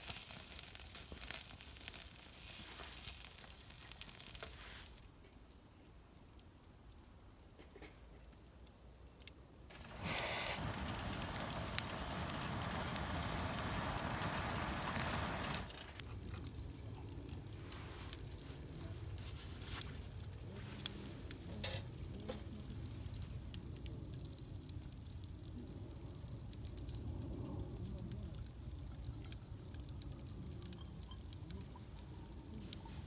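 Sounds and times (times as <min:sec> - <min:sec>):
food sizzling in a pan: 0:00.0 - 0:05.0, 0:09.7 - 0:16.0
fire crackling and popping: 0:00.0 - 0:33.0.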